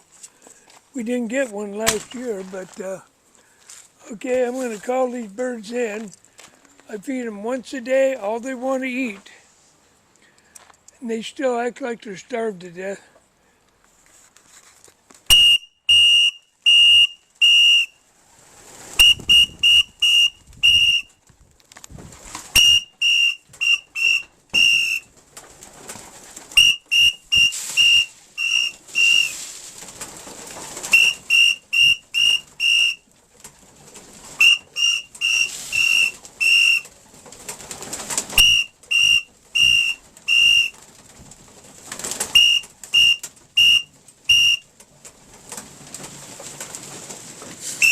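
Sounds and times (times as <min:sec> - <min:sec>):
whistle blasts: 0:15.3 - 0:18.0, 0:19.0 - 0:21.1, 0:22.6 - 0:25.1, 0:26.6 - 0:29.4, 0:30.9 - 0:33.0, 0:34.4 - 0:36.8, 0:38.4 - 0:40.8, 0:42.4 - 0:44.7.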